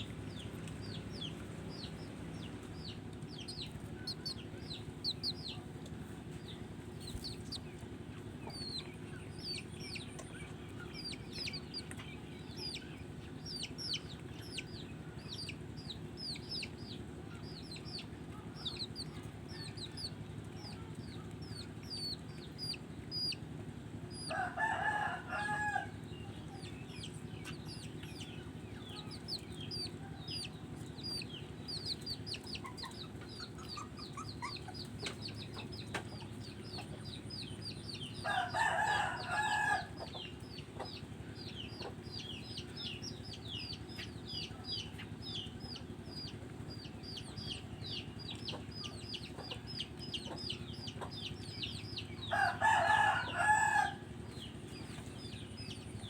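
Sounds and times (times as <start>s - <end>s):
chicks peeping: 0.0s - 56.0s
rooster crowing: 24.2s - 26.0s, 38.2s - 40.1s, 52.3s - 54.1s.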